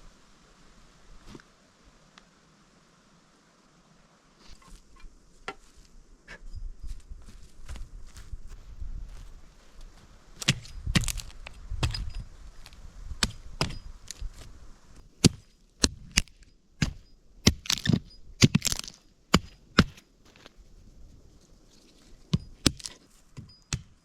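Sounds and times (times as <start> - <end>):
dry wood cracking: 10.4 - 14.5, 15.1 - 20.6, 21.7 - 23.9.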